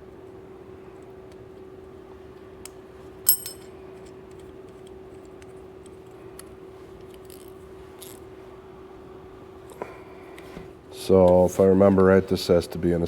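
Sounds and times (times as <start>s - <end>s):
steady hum: 3.3s - 3.7s
metallic clink: 3.3s - 3.8s.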